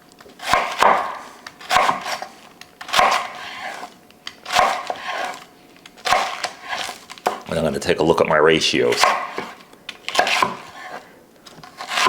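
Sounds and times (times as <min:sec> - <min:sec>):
knife cutting cabbage on board: 0:00.3 - 0:07.5, 0:08.8 - 0:12.0.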